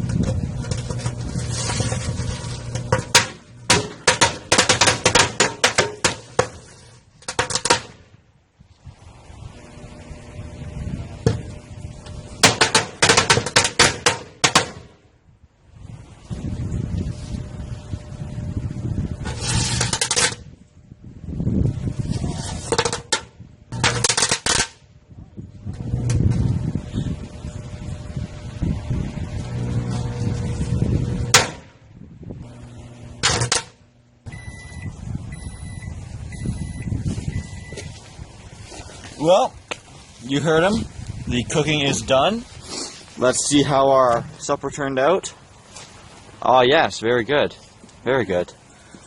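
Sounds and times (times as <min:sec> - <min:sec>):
microwave oven humming: 0:09.3 - 0:13.8, 0:25.1 - 0:37.9
thin high tone: 0:34.2 - 0:38.0.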